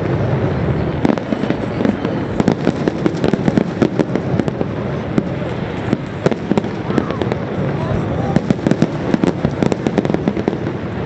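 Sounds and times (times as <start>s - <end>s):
fireworks popping and crackling: 0.0s - 11.0s
rumble of distant fireworks bursts: 0.0s - 11.0s.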